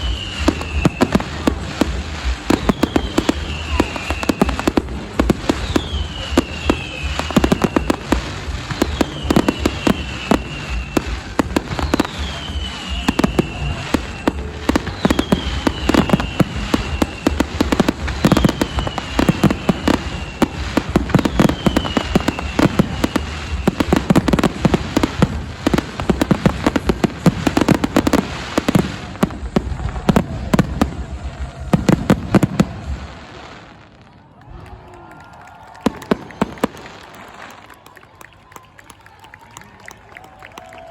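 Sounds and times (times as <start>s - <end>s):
high falling whistles: 0.0s - 1.4s, 2.3s - 25.2s
fireworks bangs and crackling: 0.0s - 38.6s.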